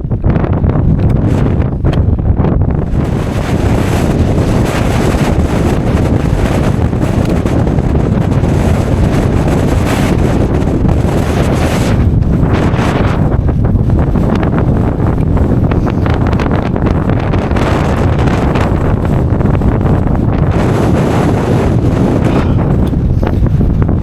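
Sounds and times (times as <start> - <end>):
storm wind buffeting microphone: 0.0 - 24.0.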